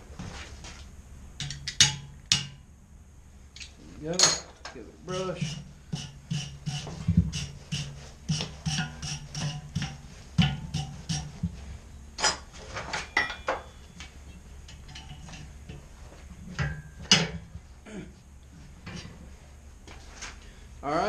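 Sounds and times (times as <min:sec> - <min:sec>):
metal clicks and knocks: 0:01.4 - 0:02.6
wire brush scrubbing steel: 0:05.0 - 0:11.5.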